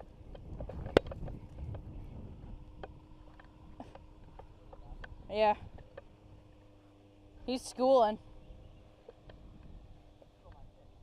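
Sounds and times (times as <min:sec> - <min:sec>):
wind noise on microphone: 0:00.0 - 0:03.8
faint steady hum: 0:00.0 - 0:11.0.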